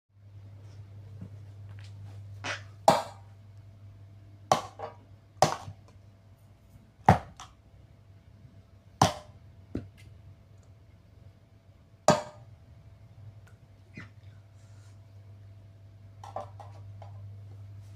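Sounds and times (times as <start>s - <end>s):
coffee maker being struck: 12.1s - 12.4s.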